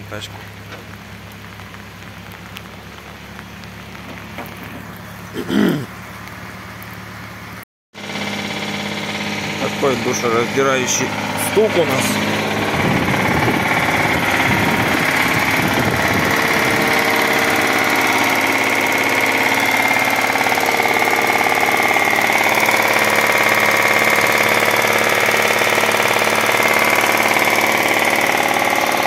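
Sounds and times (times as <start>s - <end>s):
car engine idling: 0.0s - 29.0s
loud rhythmic engine knock: 8.0s - 29.0s.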